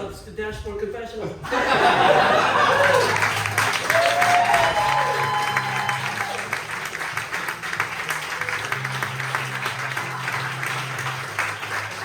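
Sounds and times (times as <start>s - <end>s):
audience applauding: 1.7s - 12.0s
music with low notes: 4.7s - 12.0s.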